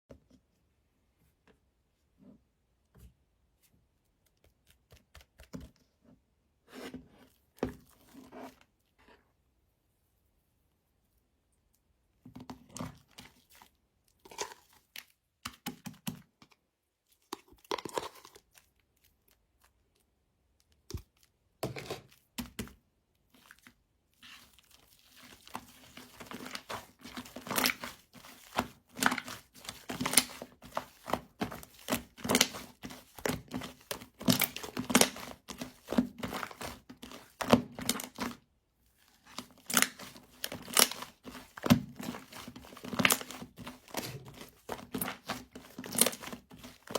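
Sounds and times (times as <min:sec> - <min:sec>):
slime squished and crackling: 0:23.3 - 0:38.4, 0:39.0 - 0:46.9.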